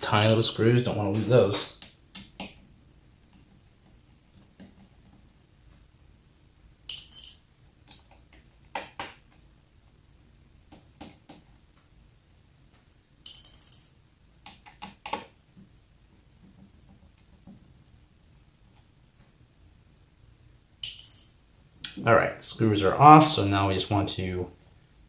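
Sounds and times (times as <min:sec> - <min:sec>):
small metal screws clinking: 0:00.2 - 0:00.7, 0:06.9 - 0:07.4, 0:13.3 - 0:14.0, 0:20.8 - 0:21.4.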